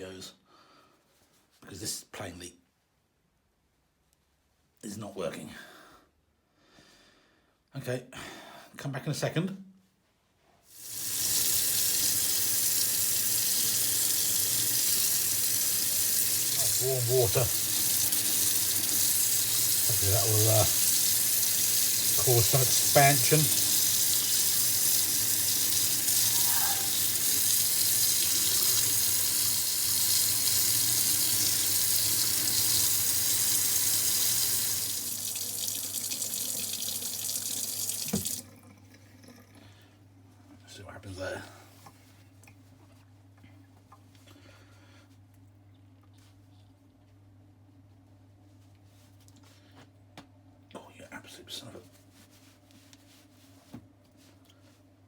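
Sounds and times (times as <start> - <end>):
water running from a tap: 10.8 - 39.7
tap water splashing on jar lid: 37.3 - 38.4.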